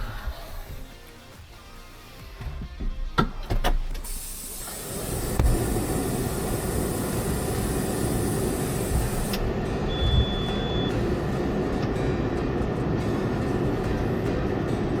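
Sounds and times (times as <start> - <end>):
tractor engine rumbling: 2.5 - 15.0
high hiss: 3.9 - 11.6.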